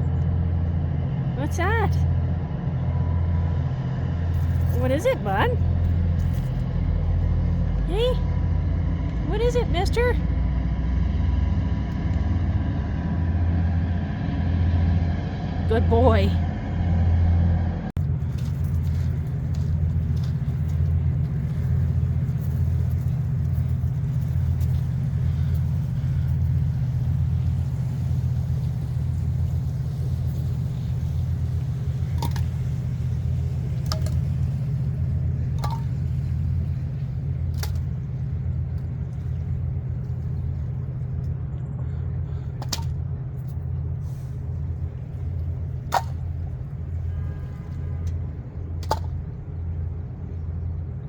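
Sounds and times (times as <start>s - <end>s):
diesel engine droning: 0.0s - 51.0s.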